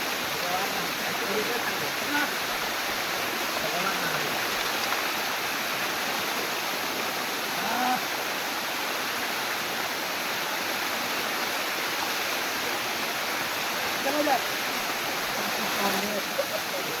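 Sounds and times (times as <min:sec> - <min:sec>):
waterfall rushing: 0:00.0 - 0:17.0
faint voice: 0:07.5 - 0:08.1.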